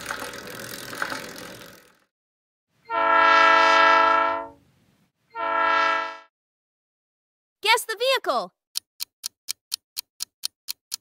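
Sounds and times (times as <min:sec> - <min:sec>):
whirring bicycle wheel with clicks: 0:00.0 - 0:02.1
train horn blast: 0:02.9 - 0:04.6, 0:05.3 - 0:06.3.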